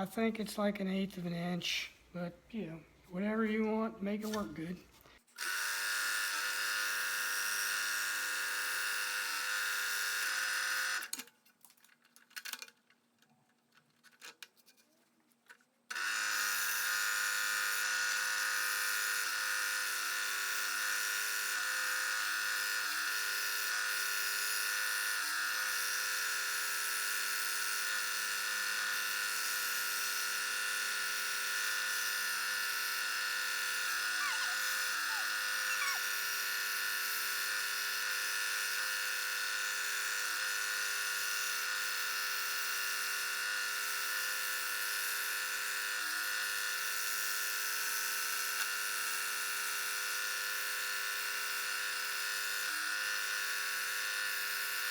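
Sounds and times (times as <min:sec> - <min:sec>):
scroll saw cutting plywood: 0:33.7 - 0:36.4.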